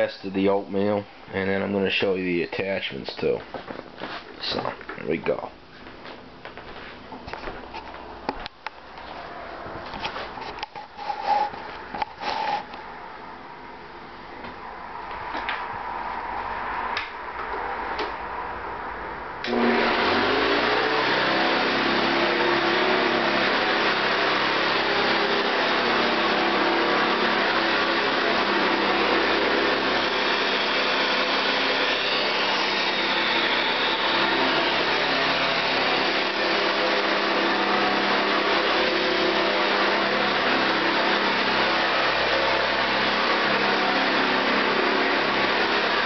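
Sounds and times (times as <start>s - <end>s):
upright vacuum cleaner running: 19.4s - 46.0s.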